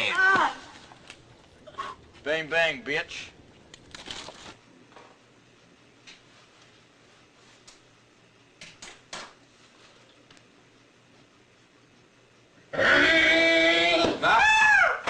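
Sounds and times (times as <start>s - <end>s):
person crying out loudly: 0.0s - 0.8s, 12.8s - 15.0s.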